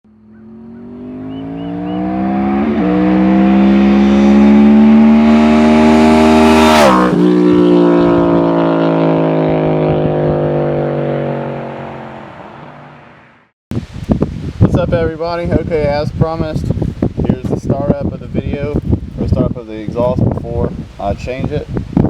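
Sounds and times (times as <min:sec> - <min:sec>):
motorcycle passing by at speed: 0:00.1 - 0:13.4.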